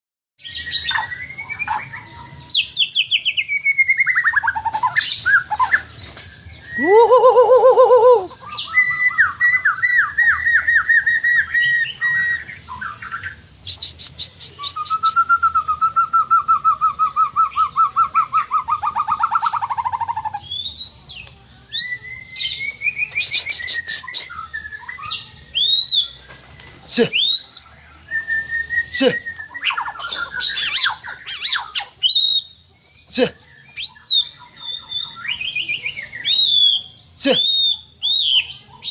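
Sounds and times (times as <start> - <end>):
high bird chirps: 0.4 - 38.9
songbird singing: 0.4 - 38.9
long fast bird trill: 6.7 - 20.8.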